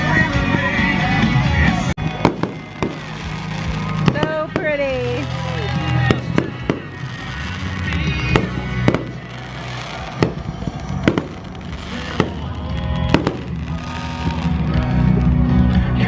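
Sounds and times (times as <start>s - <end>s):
fireworks bangs: 0.0s - 15.5s
steady music: 0.0s - 16.0s.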